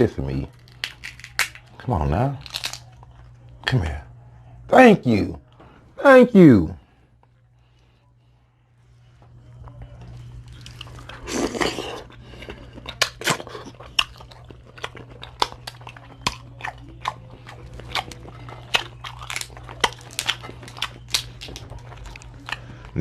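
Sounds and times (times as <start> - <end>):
crab shell crunching and cracking: 0.4 - 3.6, 10.4 - 23.0.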